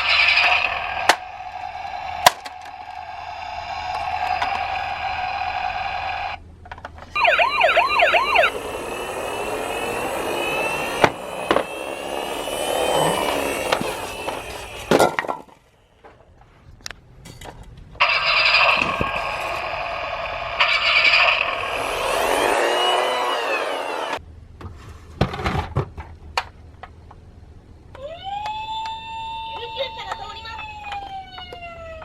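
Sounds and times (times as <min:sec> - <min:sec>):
toy electronic siren: 0:07.2 - 0:14.9, 0:18.0 - 0:24.2, 0:28.0 - 0:32.0.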